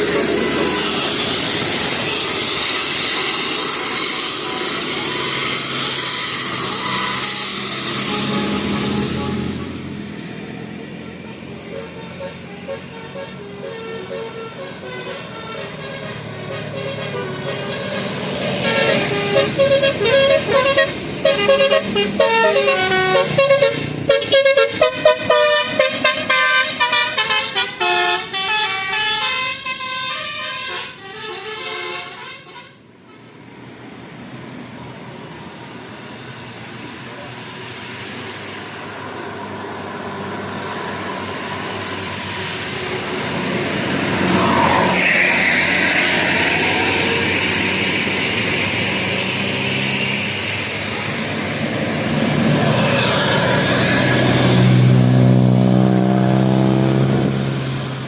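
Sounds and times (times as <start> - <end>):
bus engine and road noise: 0.0 - 58.0
bus horn melody: 6.0 - 33.3, 43.4 - 48.5, 52.1 - 56.3.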